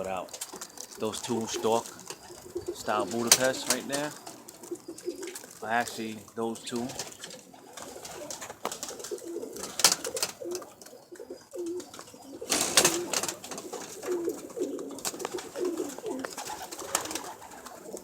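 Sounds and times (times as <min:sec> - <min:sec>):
pigeons cooing: 0:00.0 - 0:18.0
sharp clatters: 0:12.5 - 0:14.2.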